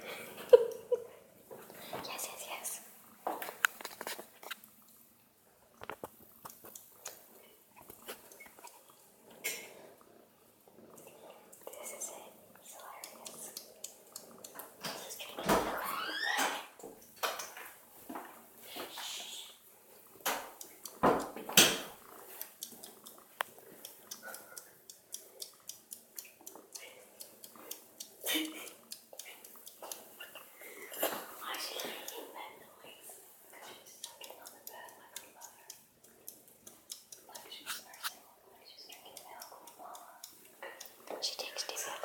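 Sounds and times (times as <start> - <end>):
kittens wet clicking and smacking: 0.2 - 5.0, 5.7 - 42.0
small clicks: 20.1 - 30.5.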